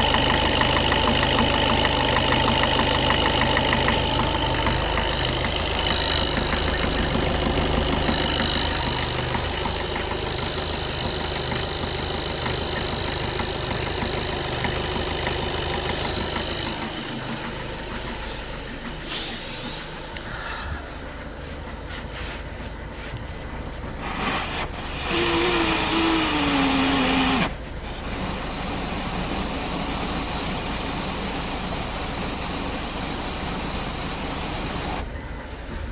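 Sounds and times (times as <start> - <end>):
diesel engine idling with knock: 0.0 - 35.9.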